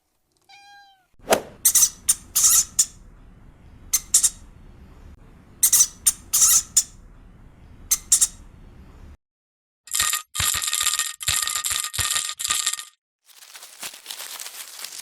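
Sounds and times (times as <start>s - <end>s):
hamster squeaking: 1.6s - 3.0s, 3.9s - 4.5s, 5.6s - 7.0s, 7.9s - 8.5s.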